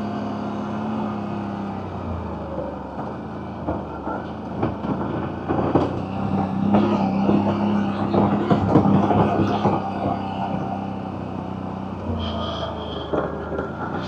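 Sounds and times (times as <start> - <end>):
atv engine running: 0.0 - 14.0
knocks and rattles: 3.0 - 10.9.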